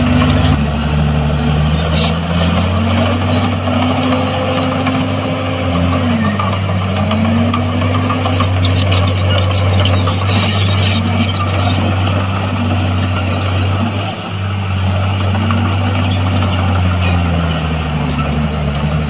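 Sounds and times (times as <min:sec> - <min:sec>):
heavy diesel machine engine: 0:00.0 - 0:19.0.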